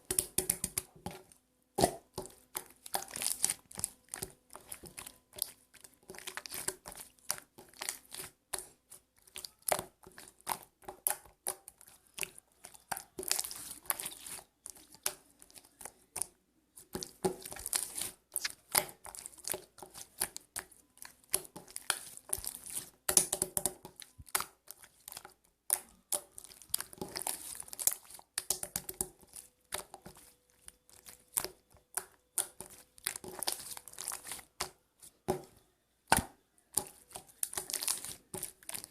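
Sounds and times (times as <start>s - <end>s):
slime clicking and crackling: 0.0s - 34.8s, 36.1s - 38.9s.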